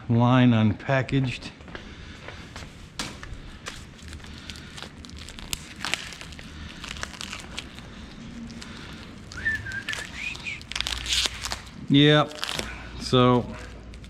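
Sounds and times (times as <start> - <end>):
plastic packaging crinkling: 3.2 - 14.0.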